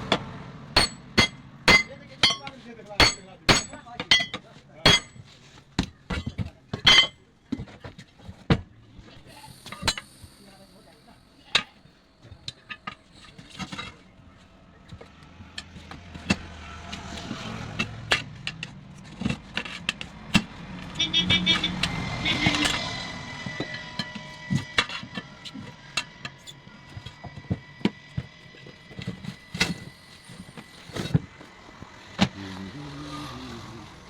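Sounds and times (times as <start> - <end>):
vehicle engine: 0.0 - 6.1, 7.3 - 34.0
metal tools knocking and clinking: 0.8 - 8.1, 11.5 - 14.1.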